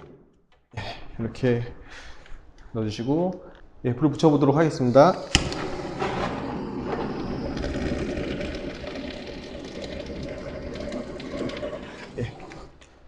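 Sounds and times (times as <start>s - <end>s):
gas torch hissing: 4.8s - 12.8s.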